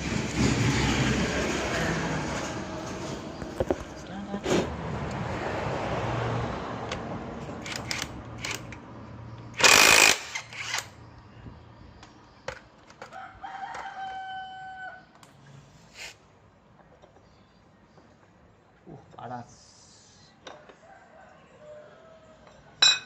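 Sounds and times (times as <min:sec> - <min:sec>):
rooster crowing: 0:13.1 - 0:15.1, 0:20.6 - 0:22.7.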